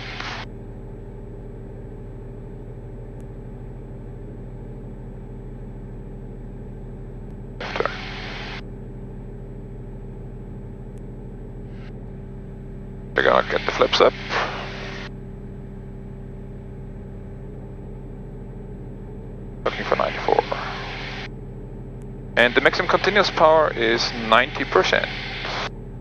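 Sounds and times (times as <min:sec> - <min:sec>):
aircraft engine and propeller drone: 0:00.0 - 0:26.0.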